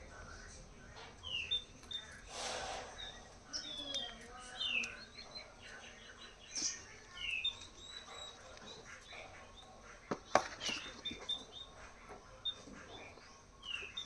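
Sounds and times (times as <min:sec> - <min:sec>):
small bird chirping: 0:00.1 - 0:14.0
soft clicks: 0:04.8 - 0:05.0.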